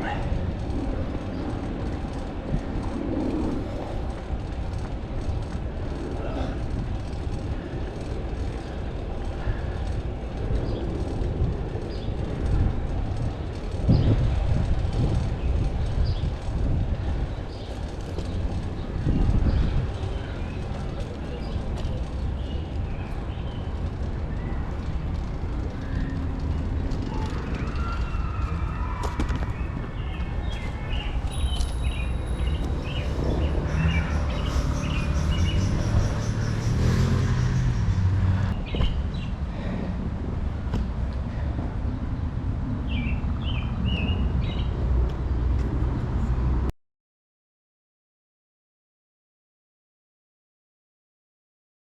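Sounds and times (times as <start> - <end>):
low rumble of street noise: 0.0 - 46.7
wind on microphone: 0.0 - 46.7.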